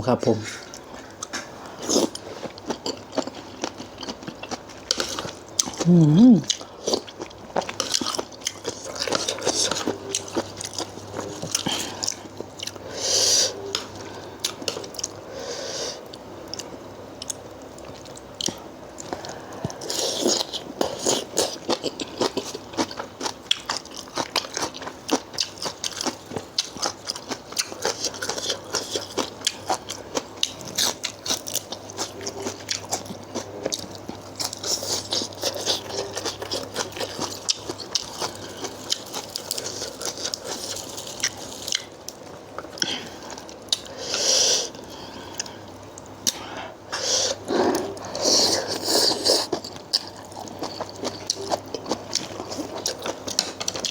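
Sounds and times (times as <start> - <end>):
chewing and crunching food: 0.0 - 15.4, 16.0 - 53.9.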